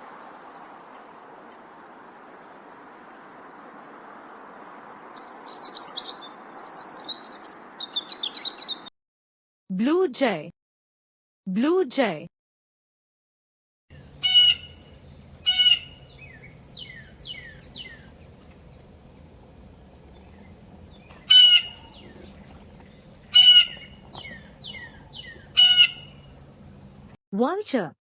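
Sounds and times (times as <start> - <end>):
blue jay calling: 4.5 - 8.9, 13.9 - 26.9.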